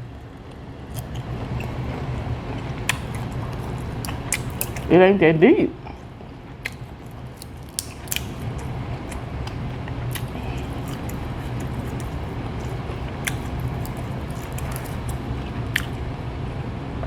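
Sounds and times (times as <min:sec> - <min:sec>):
person chewing food: 0:00.4 - 0:04.9, 0:05.9 - 0:16.2
sharp mouth clicks: 0:02.6 - 0:04.9, 0:06.6 - 0:16.0.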